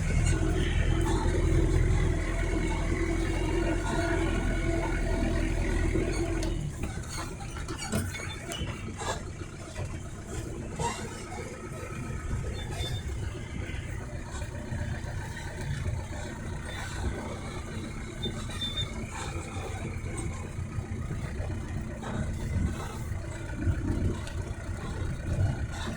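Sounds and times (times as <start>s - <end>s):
engine running: 0.0s - 25.9s
low uneven rumble: 0.0s - 25.9s.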